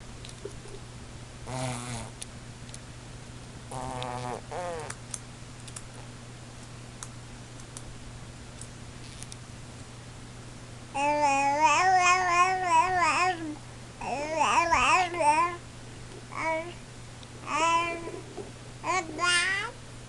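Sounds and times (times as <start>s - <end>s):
steady low hum: 0.0s - 20.0s
baby blowing raspberries: 1.5s - 2.2s, 3.7s - 4.9s.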